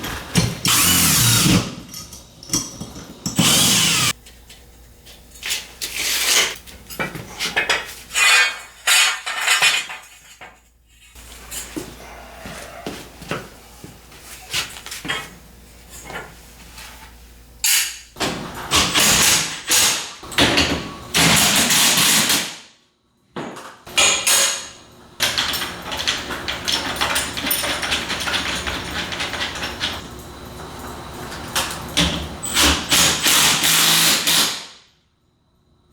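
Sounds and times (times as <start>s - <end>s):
power tool bursts: 0.6s - 1.8s, 3.2s - 4.2s, 32.6s - 34.8s.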